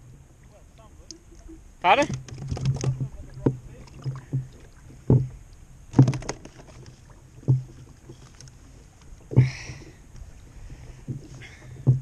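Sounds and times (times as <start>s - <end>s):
hollow knocks on kayak hull: 2.1s - 8.0s, 11.0s - 12.0s.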